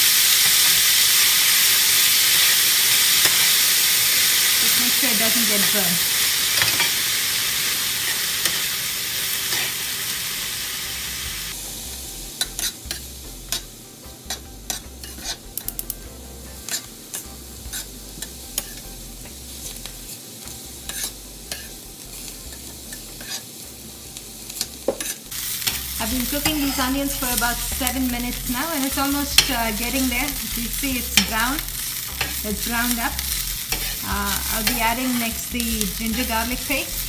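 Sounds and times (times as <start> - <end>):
onions sizzling in oil: 0.0 - 37.0
spatula scraping pan: 12.4 - 20.1, 20.8 - 23.5, 24.6 - 35.4.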